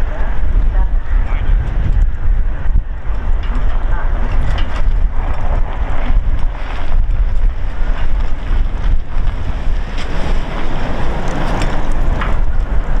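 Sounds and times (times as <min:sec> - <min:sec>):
wind buffeting microphone: 0:00.0 - 0:13.0
train rolling past: 0:07.0 - 0:13.0.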